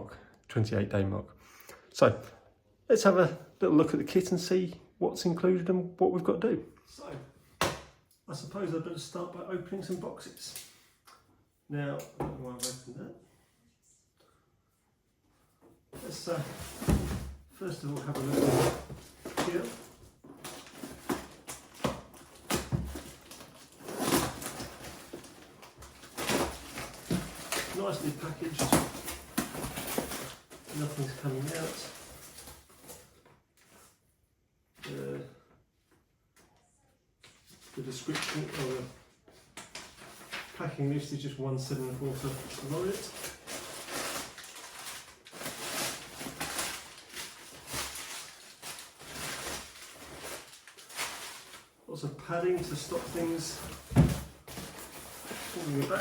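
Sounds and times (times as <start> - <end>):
cardboard boxes rustling and knocking: 16.0 - 30.7, 52.5 - 56.0.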